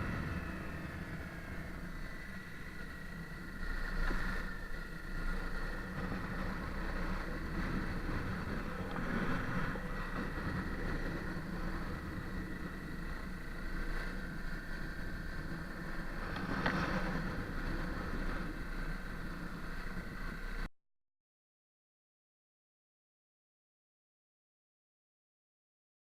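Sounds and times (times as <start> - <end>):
motorcycle engine riding along: 0.0 - 20.7.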